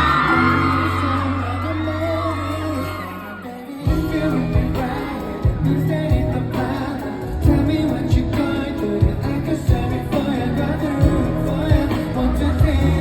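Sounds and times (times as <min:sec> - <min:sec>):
audience whooping: 0:00.0 - 0:05.4
live pop song with singing: 0:00.0 - 0:13.0
drums and bass beat: 0:03.8 - 0:13.0.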